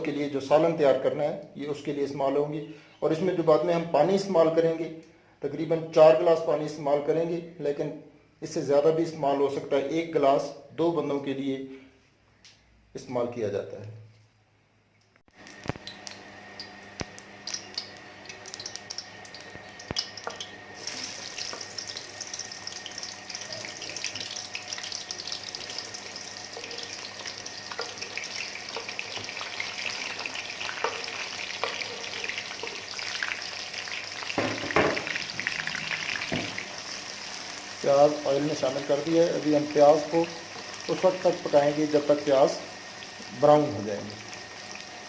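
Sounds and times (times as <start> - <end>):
onions sizzling in oil: 15.5 - 45.0
stirring knocks: 26.6 - 33.1, 34.2 - 36.7.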